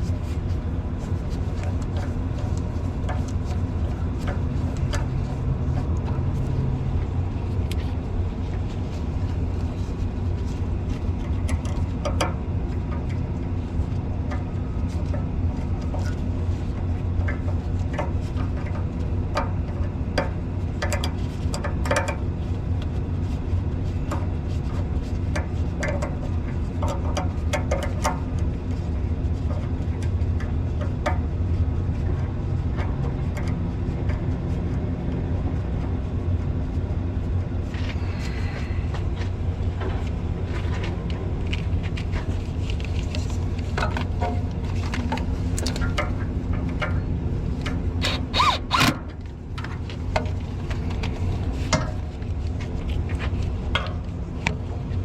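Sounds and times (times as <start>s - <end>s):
metallic clicks of hand tools: 48.0s - 49.0s.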